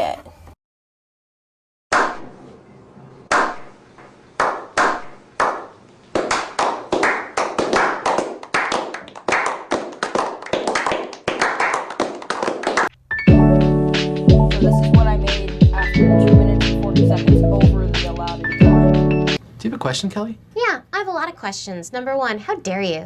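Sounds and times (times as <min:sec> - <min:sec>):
hand clapping: 0:04.4 - 0:12.9.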